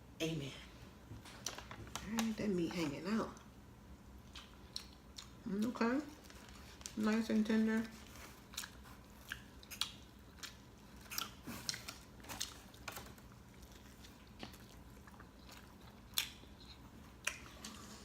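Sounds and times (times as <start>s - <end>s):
person chewing food: 4.1s - 7.0s, 8.0s - 17.9s.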